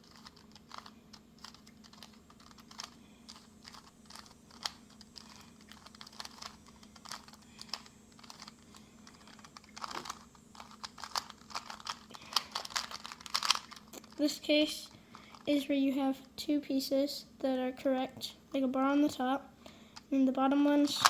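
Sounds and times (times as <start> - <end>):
plastic puzzle cube clicks: 0.0 - 13.8
faint steady hum: 0.0 - 21.0.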